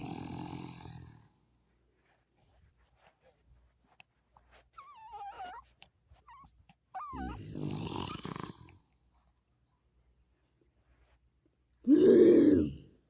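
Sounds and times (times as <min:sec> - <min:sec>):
animal whining call: 0:04.8 - 0:05.6, 0:06.2 - 0:08.4.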